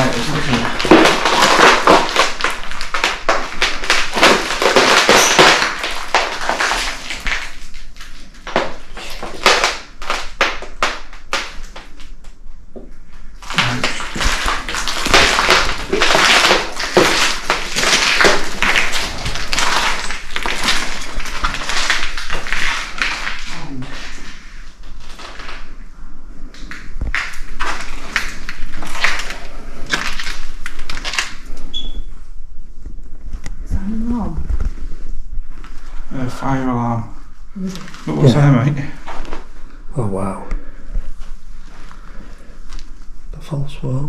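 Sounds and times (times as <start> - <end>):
footsteps crunching on debris: 0.0 - 25.8, 26.6 - 32.2.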